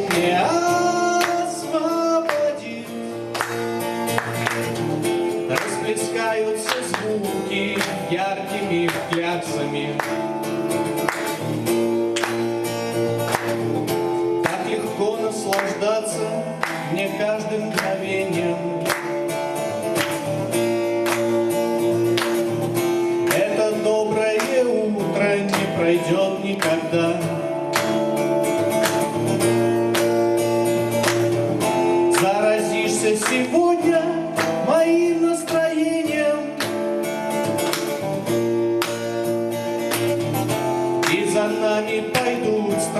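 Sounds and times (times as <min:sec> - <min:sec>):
man singing: 0:00.0 - 0:03.6, 0:05.3 - 0:10.2, 0:14.4 - 0:19.2, 0:23.2 - 0:27.7, 0:32.0 - 0:36.8, 0:40.8 - 0:42.9
strummed acoustic guitar: 0:00.0 - 0:42.9.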